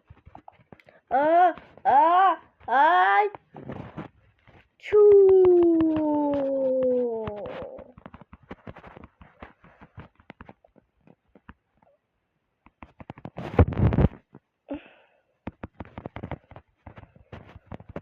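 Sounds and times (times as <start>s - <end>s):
light clicks and taps: 4.4s - 12.0s.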